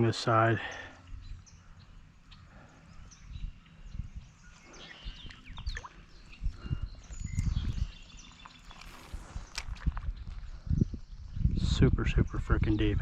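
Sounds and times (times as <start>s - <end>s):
small birds chirping: 0.0s - 13.0s
footsteps wading in creek: 4.8s - 6.5s.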